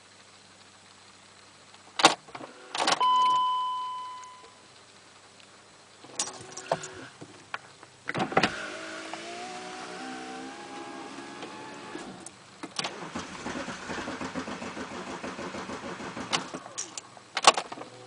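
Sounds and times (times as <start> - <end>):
chime tone: 3.0 - 4.6
mechanical whine: 8.1 - 13.2.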